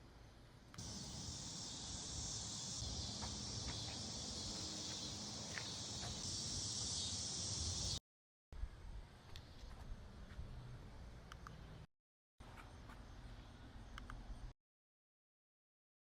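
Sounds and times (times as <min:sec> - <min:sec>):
insect chorus: 0:00.8 - 0:08.0.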